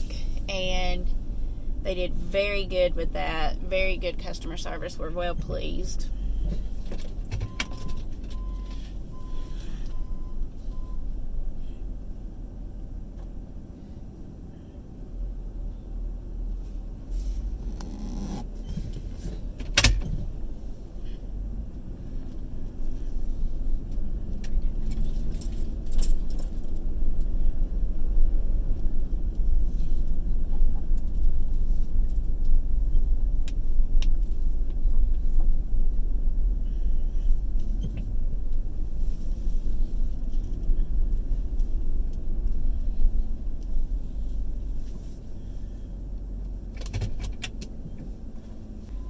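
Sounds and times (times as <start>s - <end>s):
engine and road rumble: 0.0s - 49.0s
light rattles and clicks: 23.9s - 27.4s.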